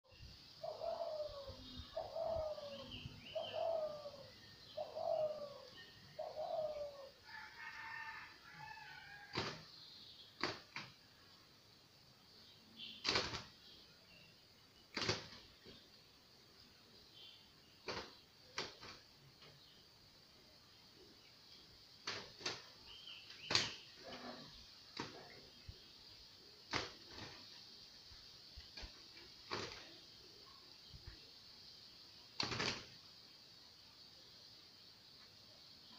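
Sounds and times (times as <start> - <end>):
small birds chirping: 0.0 - 35.9
dove cooing: 0.6 - 7.2.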